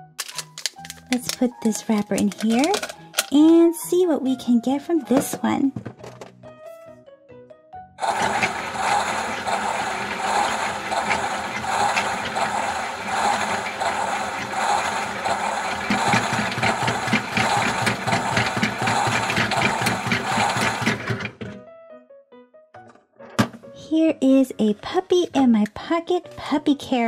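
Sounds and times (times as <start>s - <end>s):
drum rattling: 0.2s - 3.6s, 8.0s - 21.4s
toy washing machine motor whirring: 0.3s - 3.5s, 8.0s - 21.5s.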